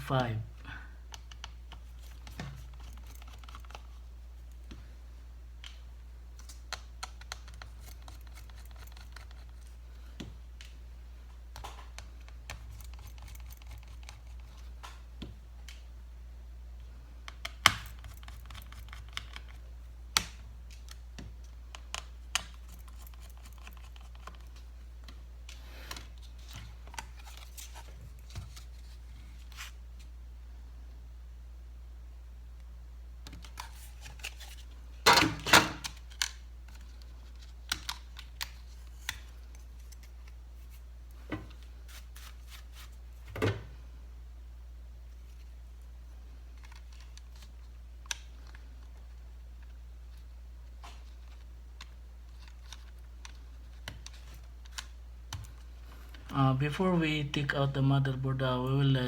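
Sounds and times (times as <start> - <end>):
tools being set down: 35.1 - 35.8.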